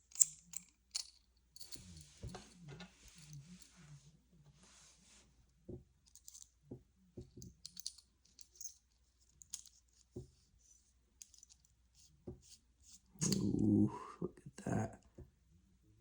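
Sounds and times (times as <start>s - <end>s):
small metal parts clicking: 0.1s - 1.7s, 7.6s - 9.8s.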